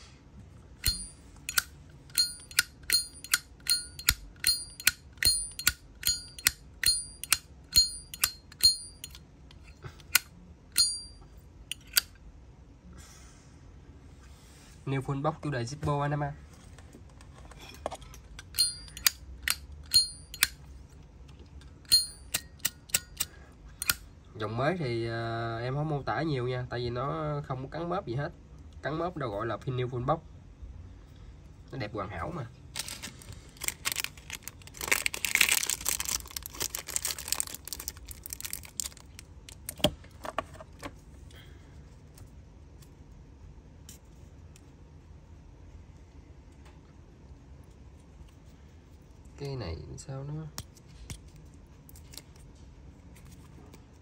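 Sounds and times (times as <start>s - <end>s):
packaging crinkling: 32.7s - 39.8s.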